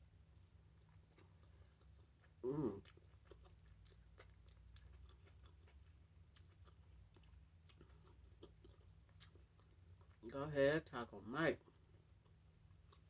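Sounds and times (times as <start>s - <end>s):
person chewing food: 0.3s - 10.6s, 11.6s - 13.0s.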